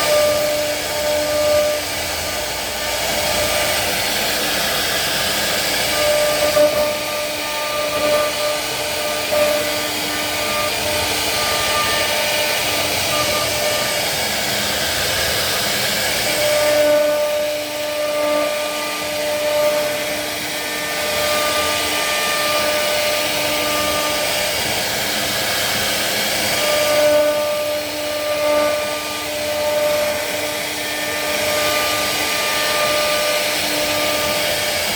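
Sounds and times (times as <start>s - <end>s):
router cutting wood hiss: 0.0s - 34.9s
wood router spindle whine: 0.0s - 34.9s.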